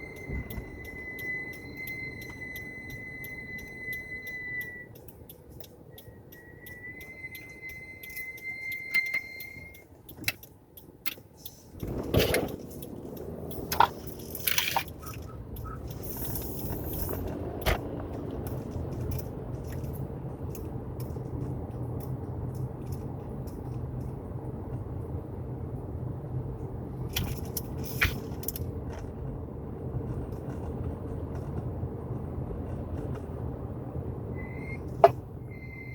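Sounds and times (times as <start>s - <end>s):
high-pitched brake squeal: 0.0s - 4.9s, 5.9s - 9.8s, 34.3s - 35.9s
car engine drone: 0.0s - 35.9s
sharp clicks and knocks: 4.9s - 24.2s, 34.8s - 35.3s.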